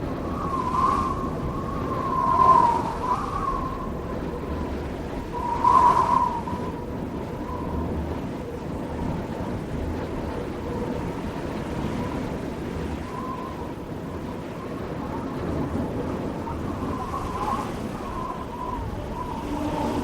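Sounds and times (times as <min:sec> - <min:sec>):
squeaky wheels squealing: 0:19.0 - 0:20.0.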